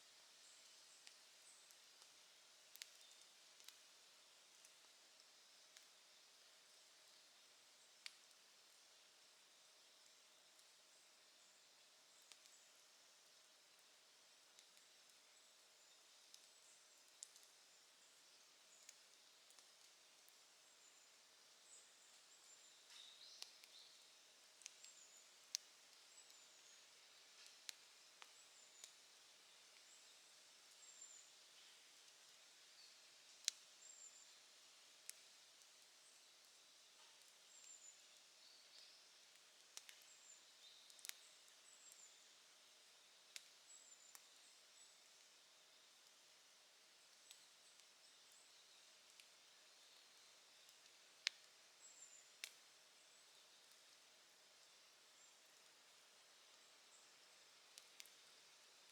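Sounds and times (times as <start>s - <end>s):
wood fire crackling: 0.3s - 58.9s
campfire crackling and popping: 1.0s - 3.8s, 12.2s - 12.7s, 13.7s - 17.6s, 18.7s - 20.6s, 24.5s - 26.4s, 33.3s - 33.7s, 38.8s - 41.6s, 43.2s - 44.3s, 47.1s - 52.8s, 57.6s - 58.9s.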